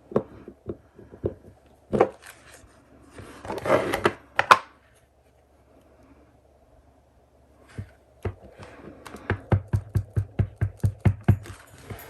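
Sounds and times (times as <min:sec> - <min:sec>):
rustling: 0:11.4 - 0:12.0.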